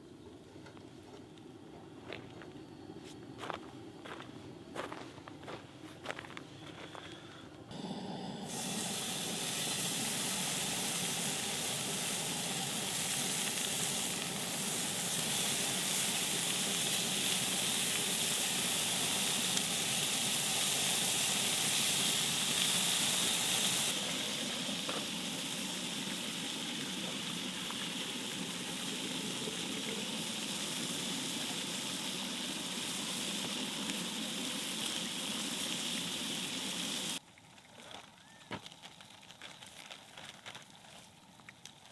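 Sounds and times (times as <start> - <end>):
food sizzling in a pan: 7.8 - 37.2.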